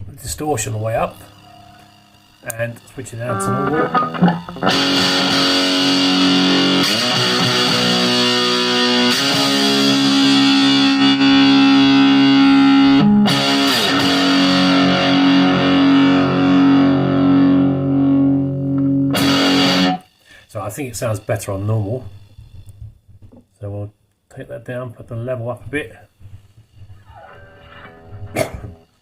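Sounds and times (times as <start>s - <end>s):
distorted electric guitar chords: 0.9s - 20.4s, 26.9s - 28.9s.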